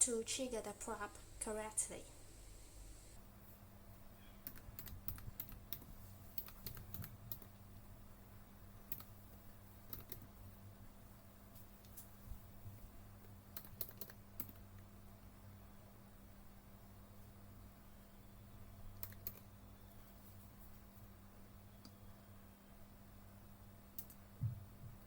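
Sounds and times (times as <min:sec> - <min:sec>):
faint steady hum: 0:00.0 - 0:25.0.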